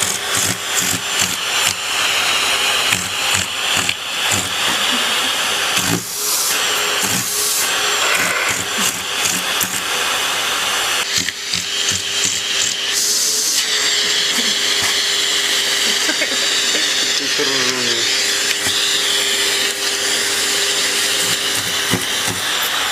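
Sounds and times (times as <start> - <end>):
vacuum cleaner running: 0.0 - 22.9.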